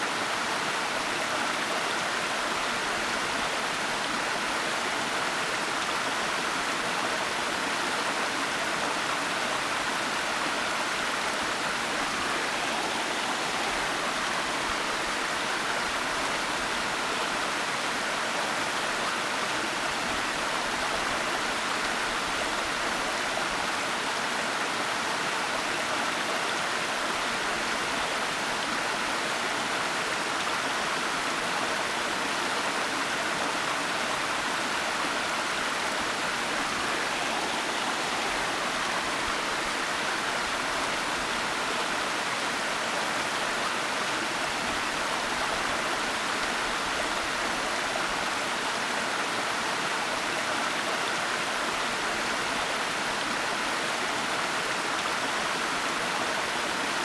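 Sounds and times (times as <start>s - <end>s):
waterfall rushing: 33.6s - 42.7s.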